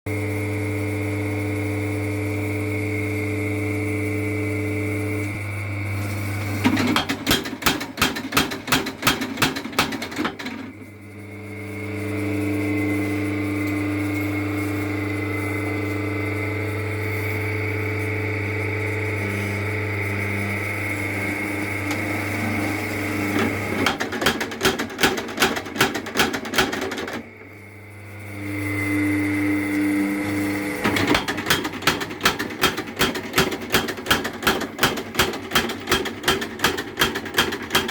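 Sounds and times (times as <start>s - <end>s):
power hammer motor humming: 0.1s - 37.9s
rapid repeated hammer blows: 6.8s - 10.5s, 23.8s - 27.2s, 30.9s - 37.9s.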